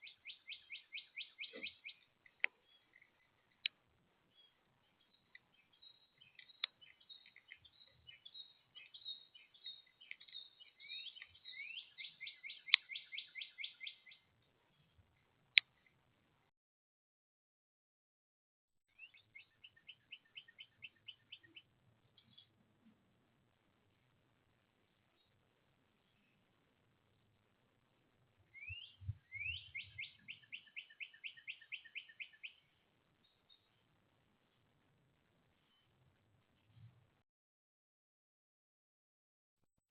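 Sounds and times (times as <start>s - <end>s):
songbirds chirping: 0.0s - 16.5s, 18.8s - 37.2s.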